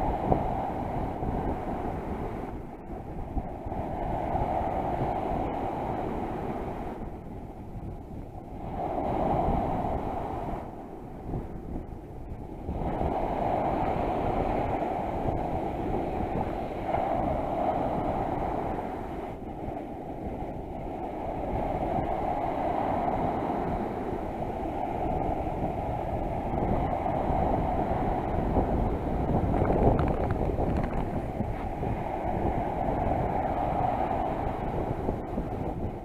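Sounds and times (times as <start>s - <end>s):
sea surf washing on shore: 0.0s - 36.0s
wind buffeting microphone: 0.0s - 36.0s.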